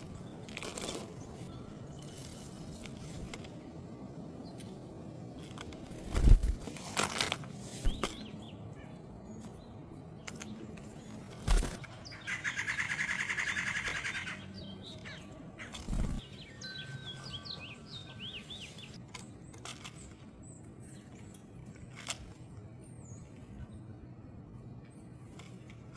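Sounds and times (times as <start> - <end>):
songbird trill: 7.8 - 25.7.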